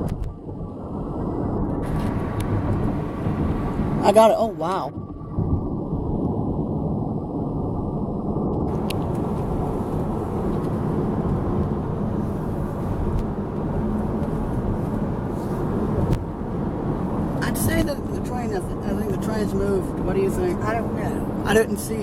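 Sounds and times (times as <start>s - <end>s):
road and engine rumble: 0.0s - 22.0s.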